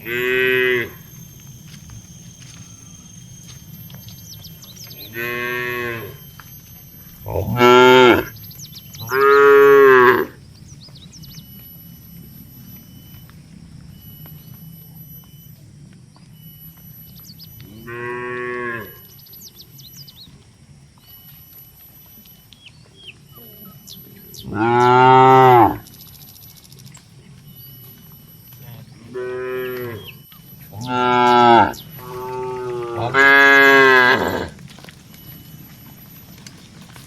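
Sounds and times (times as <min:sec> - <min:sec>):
cattle mooing: 0:00.0 - 0:01.2, 0:04.7 - 0:06.2, 0:07.1 - 0:10.4, 0:17.6 - 0:19.1, 0:23.4 - 0:25.8, 0:28.6 - 0:34.7.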